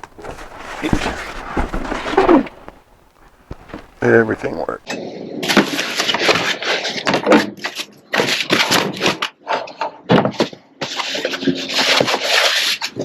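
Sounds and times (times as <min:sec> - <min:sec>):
packaging rustling: 0:00.0 - 0:04.9
parts knocking and clattering: 0:00.0 - 0:04.9.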